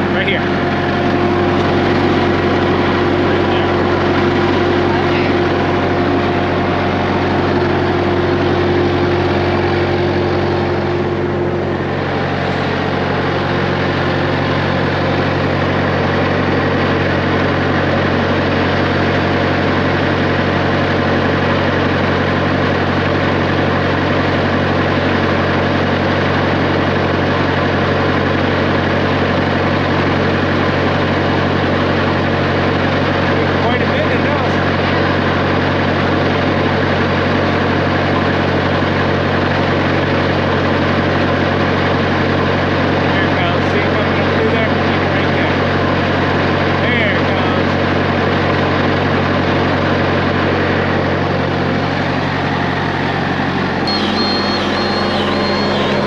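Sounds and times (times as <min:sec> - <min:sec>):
high-pitched whine: 0:00.0 - 0:28.0, 0:50.6 - 0:56.0
diesel engine idling: 0:00.0 - 0:56.0.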